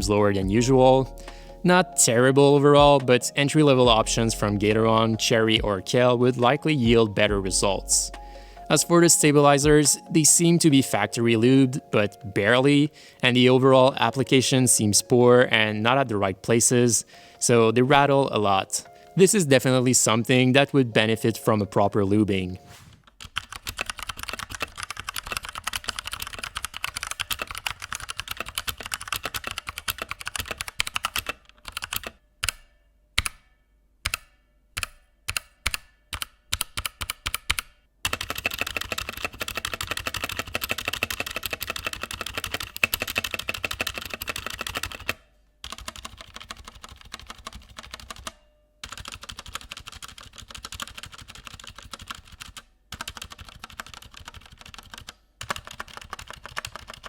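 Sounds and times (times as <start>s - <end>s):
mechanical keyboard typing: 23.2s - 32.6s, 34.1s - 57.0s.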